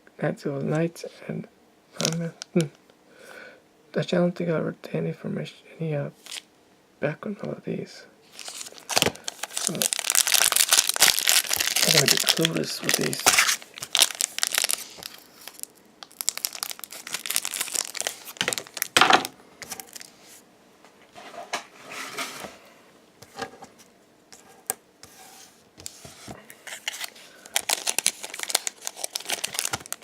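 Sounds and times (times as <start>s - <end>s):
foil wrapper crinkling: 2.0s - 2.6s, 6.2s - 6.4s, 8.3s - 20.2s, 25.8s - 30.0s.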